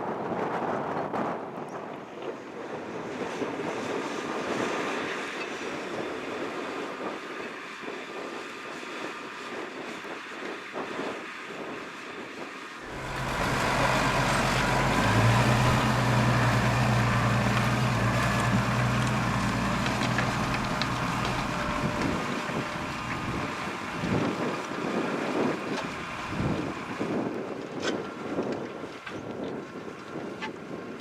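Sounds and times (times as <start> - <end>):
wind noise on microphone: 0.0 - 31.0
tractor diesel engine under load: 12.8 - 30.2.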